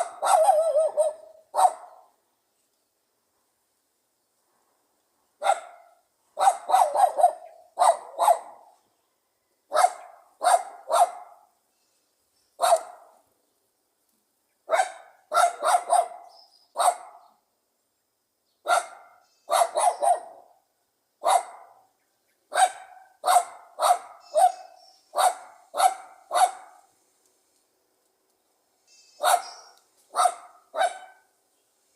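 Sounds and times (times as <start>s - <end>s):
dog barking: 0.0s - 2.1s, 5.4s - 8.8s, 9.7s - 11.5s, 12.6s - 13.2s, 14.7s - 17.3s, 18.7s - 20.5s, 21.2s - 21.9s, 22.5s - 26.9s, 29.2s - 31.3s.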